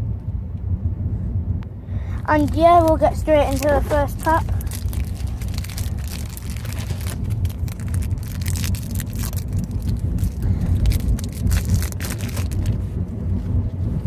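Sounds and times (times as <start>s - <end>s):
steady low rumble: 0.0s - 14.0s
foil pack crinkling: 2.1s - 12.8s.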